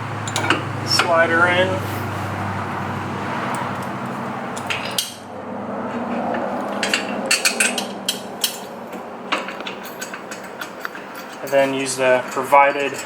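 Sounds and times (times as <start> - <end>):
sharp metal clinks: 6.8 - 13.0.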